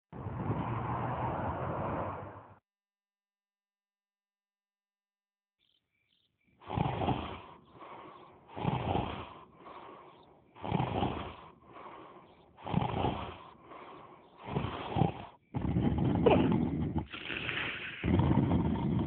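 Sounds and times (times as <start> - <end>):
cartoon snoring: 6.6 - 19.0.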